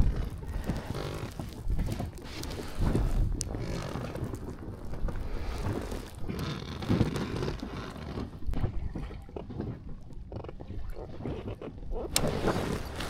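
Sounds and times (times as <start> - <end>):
wind buffeting microphone: 0.0 - 7.2
water slapping boat hull: 0.0 - 13.0.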